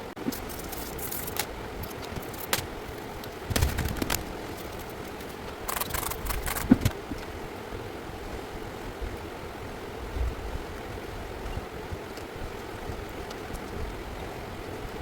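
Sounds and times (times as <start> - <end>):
steady hiss: 0.0 - 15.0
laptop parts clicking: 0.3 - 7.0.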